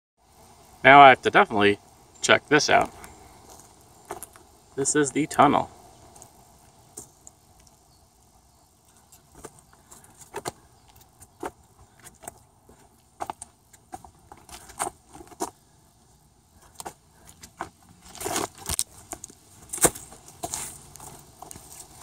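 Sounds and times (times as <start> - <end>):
knocks scuffs and rustles: 8.8 - 15.8, 16.5 - 22.0.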